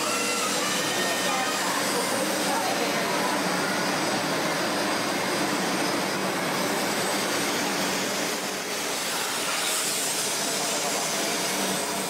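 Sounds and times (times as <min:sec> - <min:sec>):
train rushing: 0:00.0 - 0:12.0.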